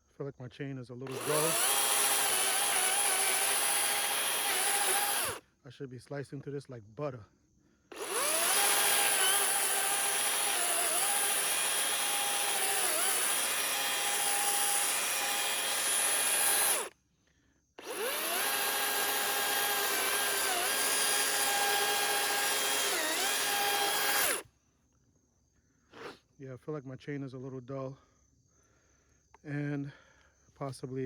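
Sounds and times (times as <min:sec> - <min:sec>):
battery chainsaw cutting tree: 0:01.0 - 0:05.4, 0:07.9 - 0:16.9, 0:17.8 - 0:24.4.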